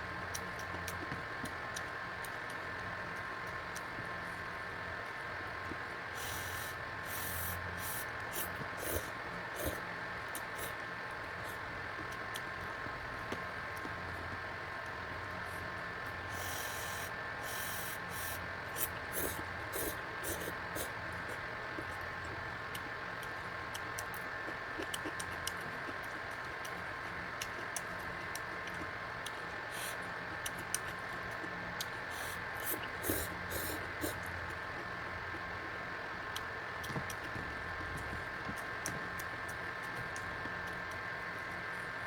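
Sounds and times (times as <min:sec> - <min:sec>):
electric fan humming: 0:00.0 - 0:42.0
chewing: 0:22.7 - 0:29.4
slurping noodles: 0:32.2 - 0:34.3.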